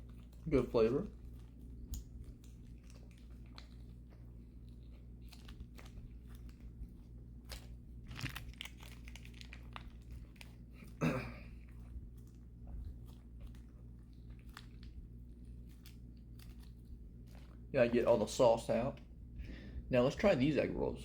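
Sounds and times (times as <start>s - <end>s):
person chewing food: 1.1s - 17.7s.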